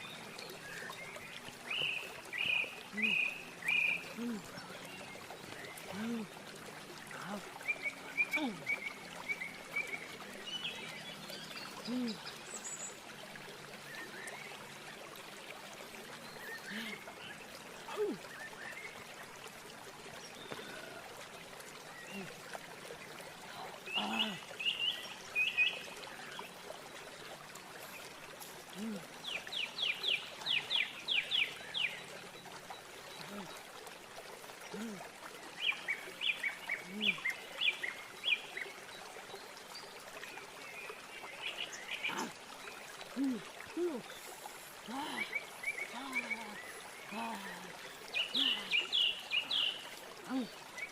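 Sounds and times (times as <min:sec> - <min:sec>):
person humming low: 0:04.2 - 0:04.7, 0:05.9 - 0:06.4, 0:11.9 - 0:12.2, 0:17.9 - 0:18.2, 0:28.7 - 0:29.1, 0:34.7 - 0:35.0, 0:43.2 - 0:44.2, 0:44.9 - 0:47.8.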